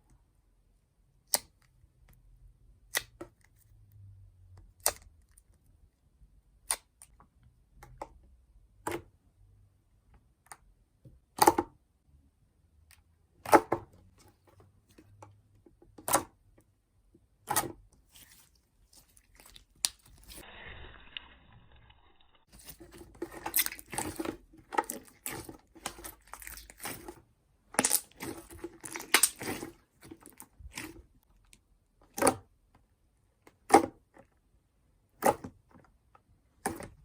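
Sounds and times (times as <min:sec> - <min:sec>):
slime squishing: 0:17.5 - 0:31.5.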